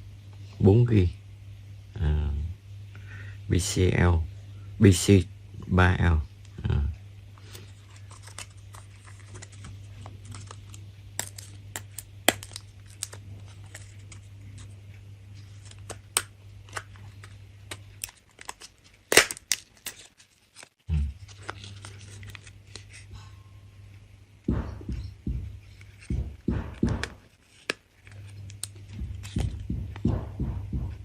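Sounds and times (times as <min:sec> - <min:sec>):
steady low hum: 0:00.0 - 0:31.0
sharp knocks: 0:24.5 - 0:25.5, 0:26.1 - 0:27.2, 0:29.0 - 0:31.0.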